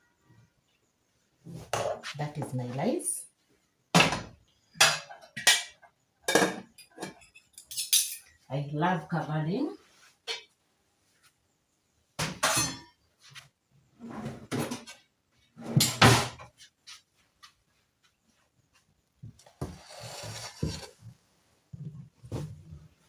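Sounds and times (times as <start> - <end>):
dishes and lids clattering: 4.0 - 8.3, 12.2 - 13.0
kitchenware scraping: 4.8 - 8.3, 12.3 - 12.9, 15.6 - 16.5, 19.6 - 21.1
soft bumps: 20.6 - 23.0.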